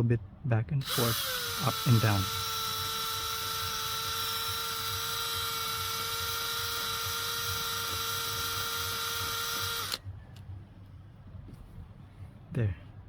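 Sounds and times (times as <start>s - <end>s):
electric drill whining: 0.8s - 10.0s.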